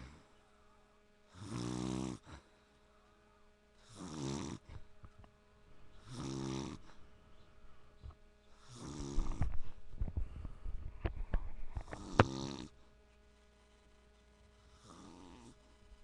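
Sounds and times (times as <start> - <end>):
man snoring: 1.3 - 2.4, 3.8 - 4.8, 6.0 - 6.9, 8.6 - 9.6, 11.9 - 12.8, 14.7 - 15.6.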